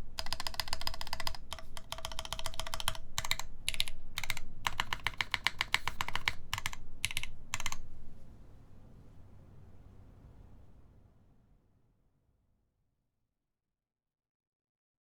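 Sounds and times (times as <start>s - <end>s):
mechanical keyboard typing: 0.0s - 8.0s.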